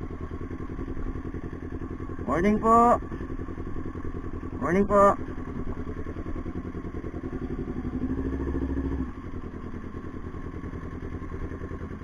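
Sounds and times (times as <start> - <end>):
motorcycle engine idling: 0.0 - 12.0
engine revving: 7.2 - 9.2.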